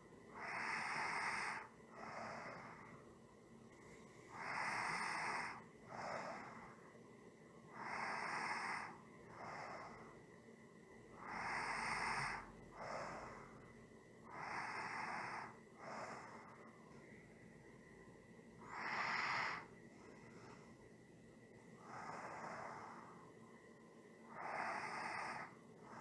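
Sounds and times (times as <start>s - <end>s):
person breathing slowly: 0.0s - 3.1s, 3.8s - 7.0s, 7.7s - 10.3s, 11.2s - 17.4s, 18.6s - 21.0s, 21.8s - 23.4s, 24.2s - 26.0s.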